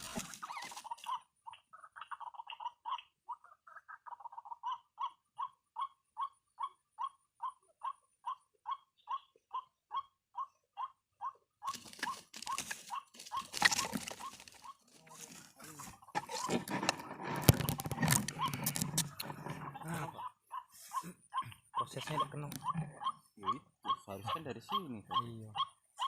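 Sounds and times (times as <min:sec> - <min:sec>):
short kwak calls: 0:00.0 - 0:01.2
waterhen croaking: 0:00.0 - 0:26.0.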